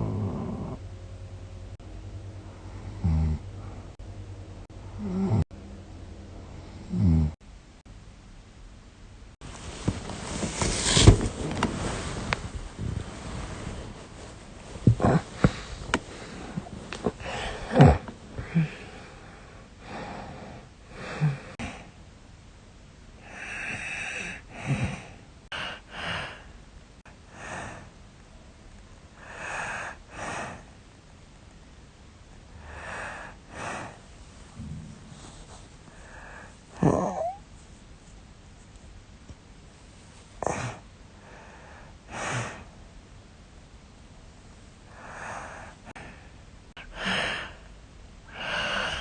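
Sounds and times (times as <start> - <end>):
woman snoring: 0.0 - 0.8, 2.9 - 3.7, 5.0 - 5.5, 6.8 - 7.4, 14.9 - 21.9, 23.2 - 26.4, 35.9 - 37.4, 48.3 - 49.0.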